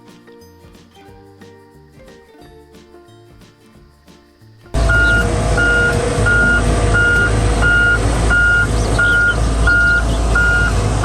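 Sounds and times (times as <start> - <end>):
loud engine rumble: 4.8 - 11.0
reversing alarm beeping: 4.8 - 11.0.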